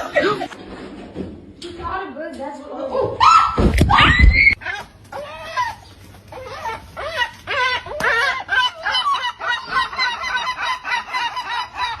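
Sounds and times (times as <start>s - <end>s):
chickens clucking and cackling: 4.5s - 12.0s.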